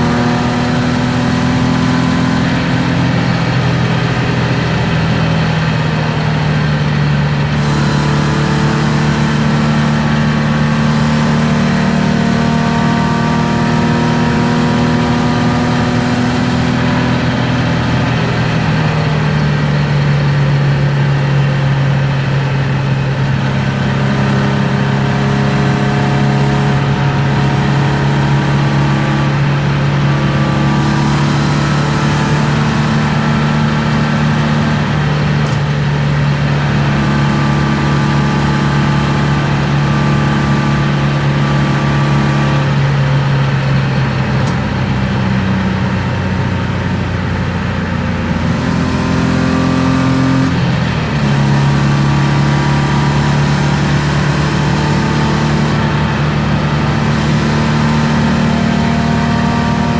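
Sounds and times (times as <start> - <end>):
car engine droning: 0.0 - 59.9
road noise: 0.0 - 59.9.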